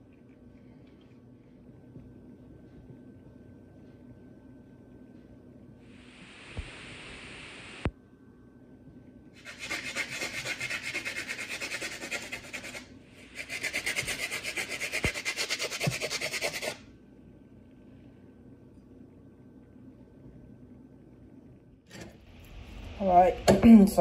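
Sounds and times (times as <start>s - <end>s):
brush scrubbing plastic: 9.4s - 16.8s.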